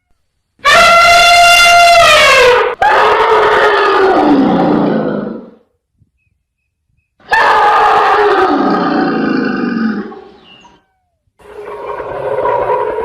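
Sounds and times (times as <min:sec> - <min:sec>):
elephant calling: 0:07.2 - 0:13.0.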